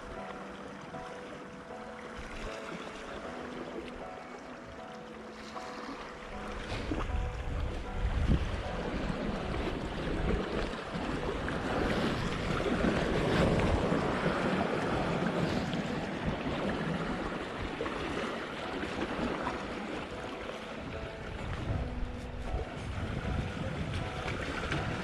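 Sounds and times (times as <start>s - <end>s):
sea waves washing against rocks: 5.3s - 25.0s
wind buffeting microphone: 6.3s - 25.0s.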